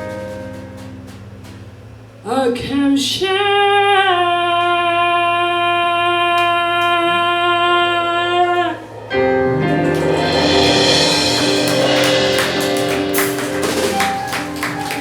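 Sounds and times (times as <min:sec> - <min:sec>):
cymbal swell: 0:07.5 - 0:15.0
drum and cymbal strokes: 0:08.0 - 0:15.0
jazz band closing chord: 0:08.4 - 0:15.0.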